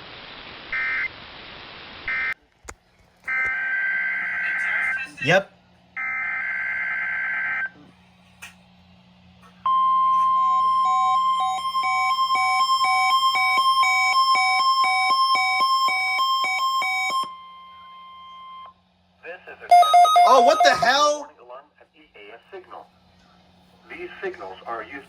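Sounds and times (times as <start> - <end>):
steady warning alarm tone: 3.3 - 5.1, 6.0 - 7.8, 9.6 - 18.8, 19.7 - 21.2
two-pitch alert beeps: 19.7 - 21.2.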